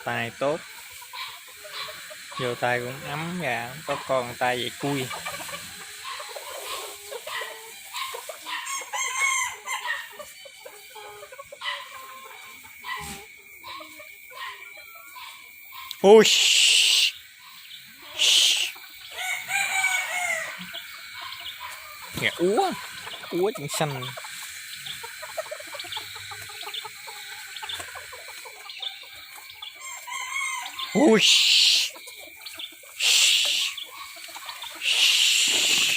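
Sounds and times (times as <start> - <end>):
chickens clucking: 0.0 - 35.9
rooster crowing loudly: 8.6 - 10.1, 19.1 - 20.7, 29.8 - 31.5.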